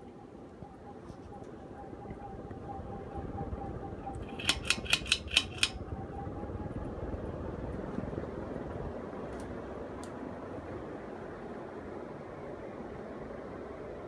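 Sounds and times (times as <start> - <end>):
ceiling fan air whoosh: 0.0 - 14.0
faint motor hum: 0.0 - 14.0
sharp clicks: 4.2 - 5.8.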